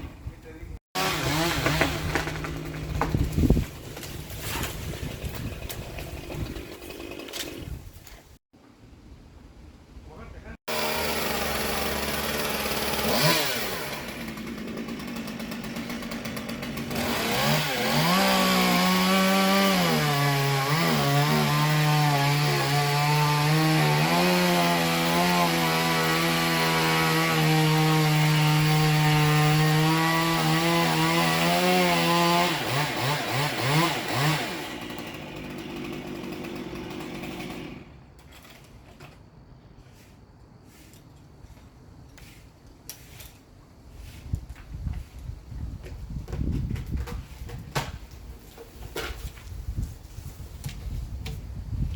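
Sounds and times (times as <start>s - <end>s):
chainsaw cutting wood: 1.0s - 8.3s, 10.7s - 39.1s.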